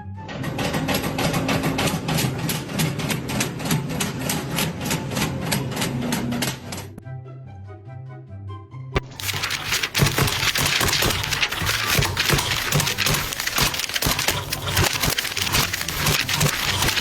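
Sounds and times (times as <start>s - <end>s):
machine clattering: 9.1s - 17.0s.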